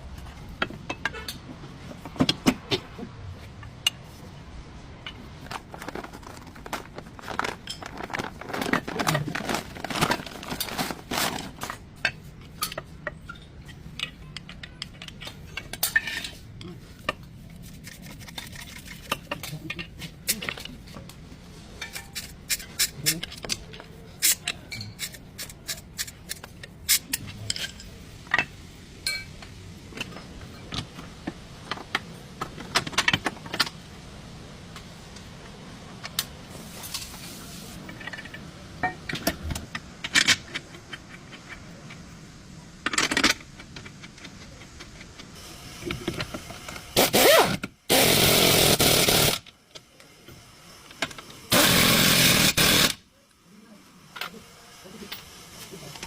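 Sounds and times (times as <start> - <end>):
metal tools clinking and knocking: 21.8 - 29.4
loud bursts of steady noise: 25.4 - 53.1.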